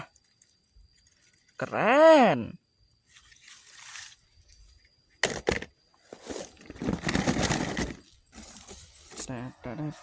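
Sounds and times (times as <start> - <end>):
rustling and scraping: 3.0 - 10.0.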